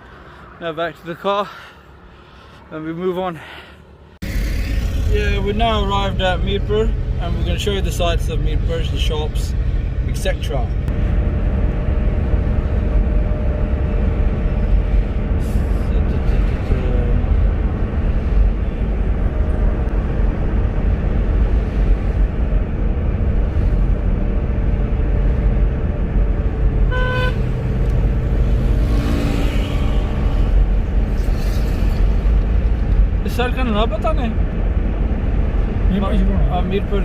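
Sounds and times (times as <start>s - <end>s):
car engine and road noise: 0.0s - 37.0s
car horn toot: 26.9s - 27.5s.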